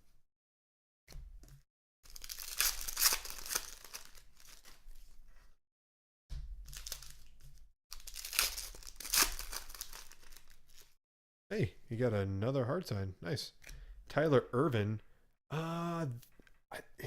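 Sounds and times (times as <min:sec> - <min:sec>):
foil wrappers tearing and crinkling: 0:02.1 - 0:04.8, 0:06.7 - 0:07.3, 0:07.9 - 0:11.0.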